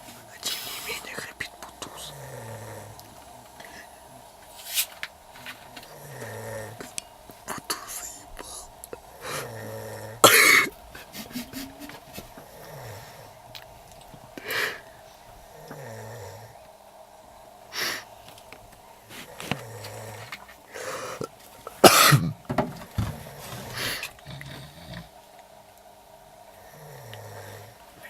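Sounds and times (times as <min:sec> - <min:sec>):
person snoring: 0:00.4 - 0:04.6, 0:05.4 - 0:13.6, 0:14.2 - 0:16.7, 0:17.7 - 0:18.2, 0:19.1 - 0:22.4, 0:23.0 - 0:25.2, 0:26.5 - 0:28.0
loud snort: 0:01.9 - 0:03.9, 0:05.8 - 0:13.4, 0:15.5 - 0:16.6, 0:19.2 - 0:22.4, 0:23.0 - 0:25.2.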